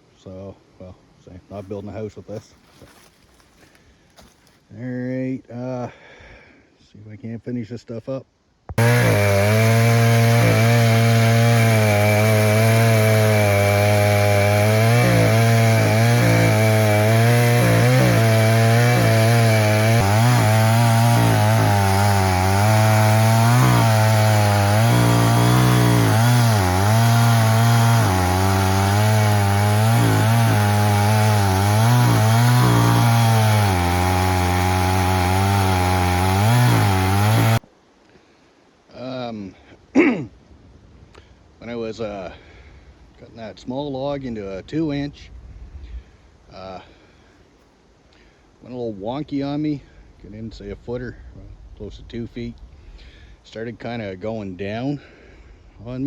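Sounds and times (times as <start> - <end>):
chainsaw cutting log: 8.7 - 37.6.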